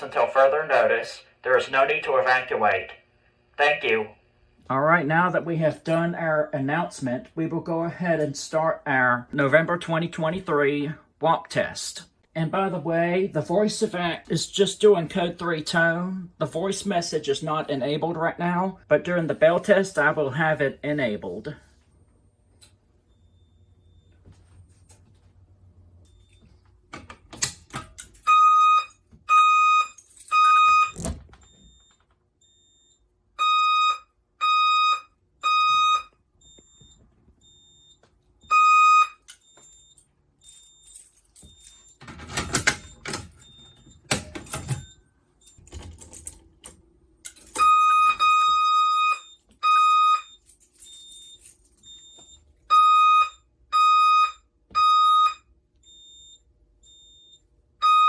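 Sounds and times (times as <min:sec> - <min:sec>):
fire alarm beeps: 0:23.1 - 0:24.3, 0:28.2 - 0:42.0, 0:42.8 - 0:45.7, 0:47.6 - 0:58.0.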